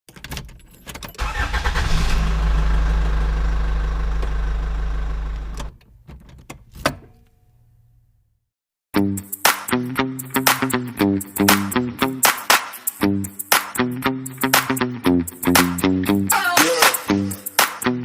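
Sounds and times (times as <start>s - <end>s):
car engine starting and running: 1.2s - 6.0s.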